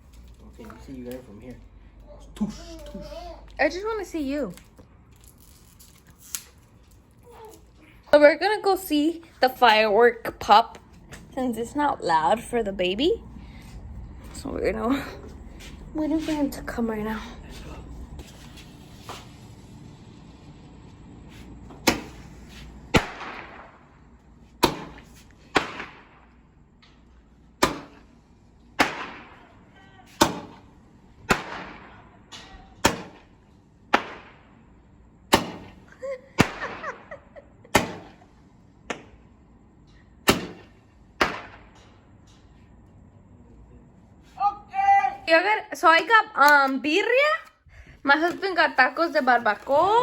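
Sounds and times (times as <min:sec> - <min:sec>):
firework pops with hiss: 0:21.8 - 0:23.9, 0:24.6 - 0:26.3, 0:28.8 - 0:29.5, 0:30.2 - 0:30.6, 0:31.3 - 0:32.0, 0:32.8 - 0:33.3, 0:33.9 - 0:34.5, 0:35.3 - 0:35.7, 0:36.4 - 0:37.1, 0:37.7 - 0:38.2, 0:40.2 - 0:42.0.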